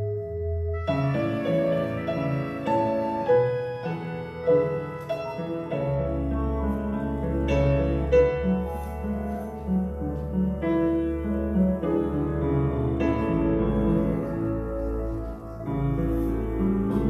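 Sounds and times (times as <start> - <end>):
keyboard chords: 0.0 - 17.0.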